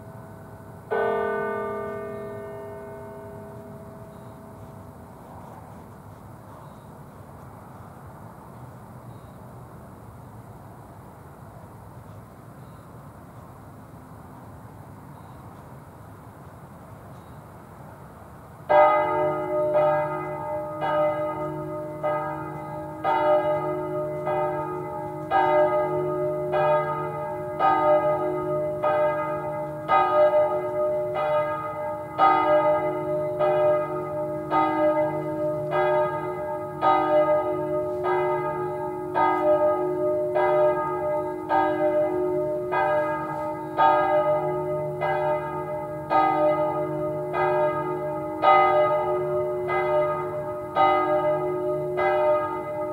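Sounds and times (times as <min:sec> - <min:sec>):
church bells ringing: 0:00.0 - 0:05.2, 0:18.7 - 0:52.9.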